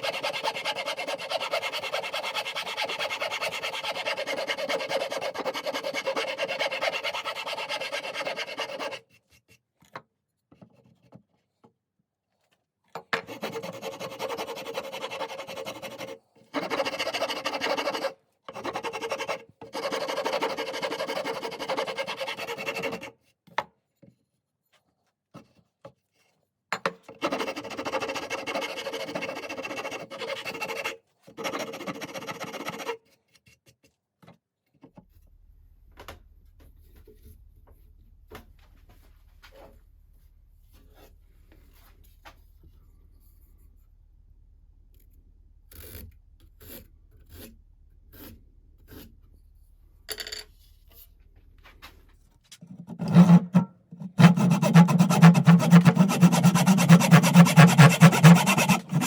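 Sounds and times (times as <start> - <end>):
wood being rasped: 0.0 - 9.0, 13.3 - 23.1, 27.2 - 32.9, 52.9 - 59.0.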